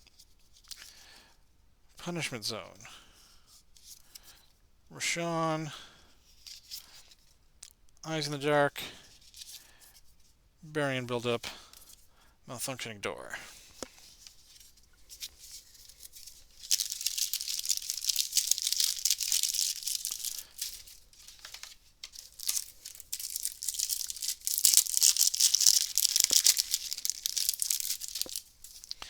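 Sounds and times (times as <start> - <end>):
wrapper tearing and crinkling: 15.5 - 29.0.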